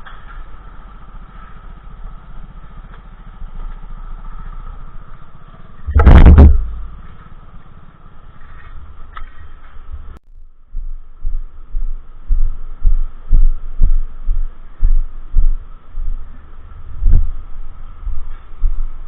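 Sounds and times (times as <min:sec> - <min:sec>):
small motorcycle engine running: 0:00.0 - 0:10.2
loud rush of noise: 0:05.9 - 0:07.2.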